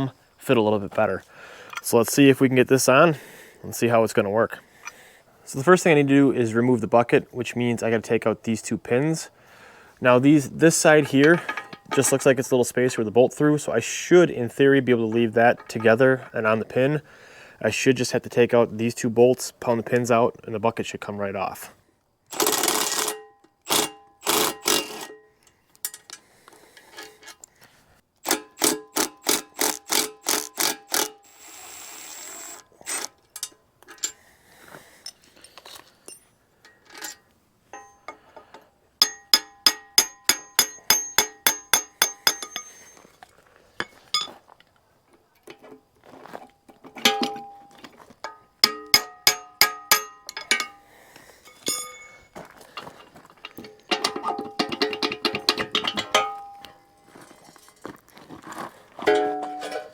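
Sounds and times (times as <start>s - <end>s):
hammer striking steel pins: 37.7s - 38.2s, 39.0s - 43.1s, 43.8s - 44.4s, 48.3s - 50.8s, 51.6s - 52.2s, 53.5s - 56.7s, 59.1s - 59.9s.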